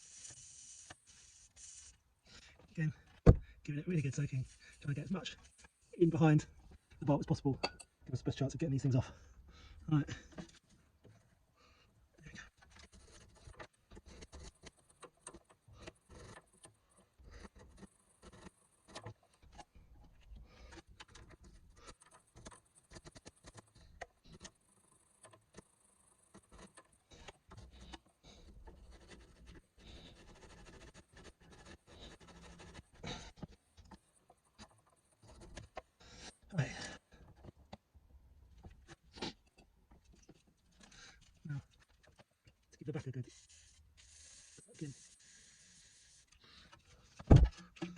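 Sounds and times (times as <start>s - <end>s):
faint clicks and taps of tools: 6.6s - 8.2s.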